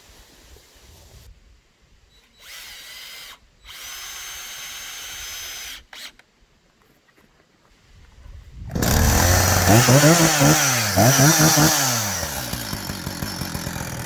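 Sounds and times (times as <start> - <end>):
cordless drill motor whine: 8.7 - 14.0.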